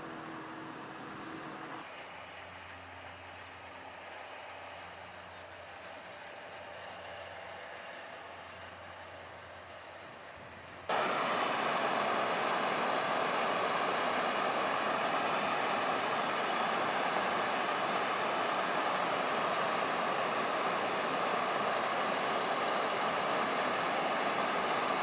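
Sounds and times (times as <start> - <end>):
waterfall rushing: 10.9 - 25.0.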